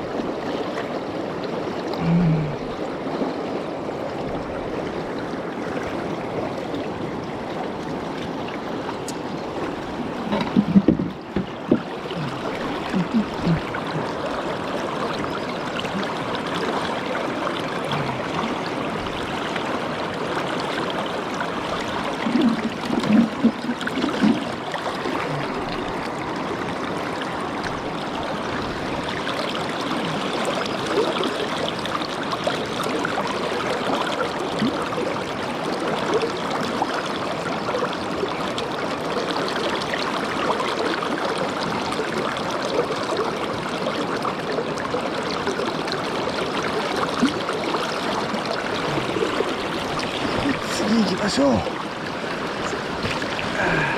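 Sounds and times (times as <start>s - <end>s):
river rushing over stones: 0.0s - 53.9s.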